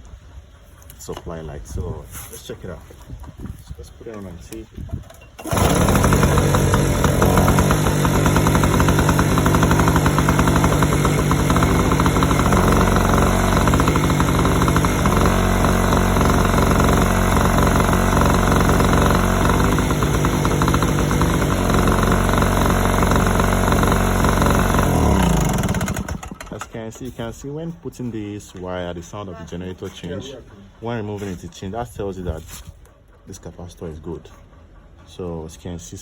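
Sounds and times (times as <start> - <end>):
portable generator engine running: 5.4 - 26.9.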